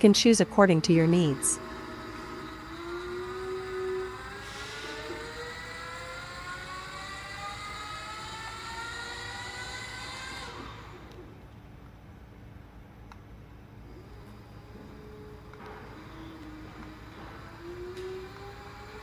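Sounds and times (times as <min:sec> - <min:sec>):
electric motor whining: 0:01.3 - 0:11.4, 0:13.9 - 0:19.0.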